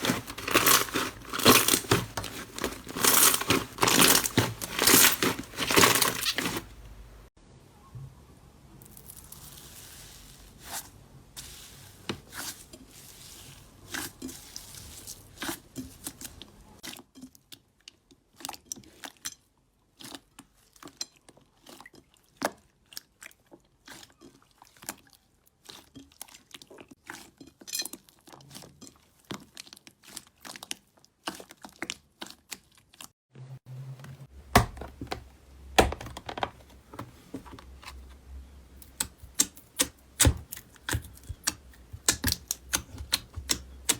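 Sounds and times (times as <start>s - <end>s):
slime crackling and popping: 38.8s - 43.9s.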